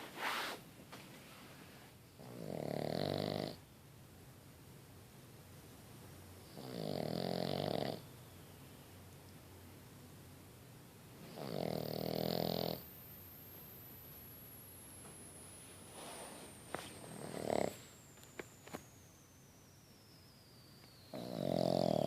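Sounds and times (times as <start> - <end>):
puppy snoring: 2.2 - 3.7, 6.4 - 8.1, 11.2 - 13.0, 15.9 - 18.0, 21.1 - 22.0.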